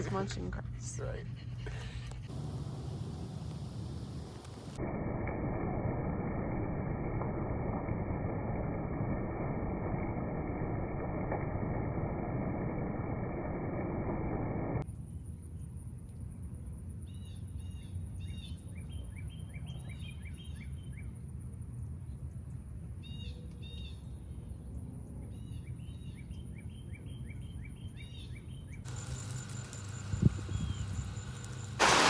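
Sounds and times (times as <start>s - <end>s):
low outdoor rumble: 0.0s - 14.8s, 28.9s - 32.0s
rain hiss: 1.6s - 4.8s, 28.9s - 32.0s.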